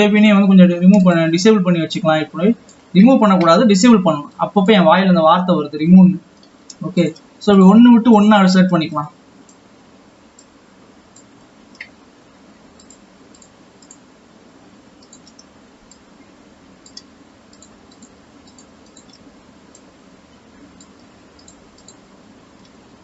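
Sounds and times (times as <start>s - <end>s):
faint steady hum: 0.0s - 23.0s
computer mouse clicking: 10.3s - 12.0s, 12.8s - 14.0s, 15.0s - 16.1s, 16.8s - 19.9s, 20.7s - 22.0s, 22.6s - 22.8s.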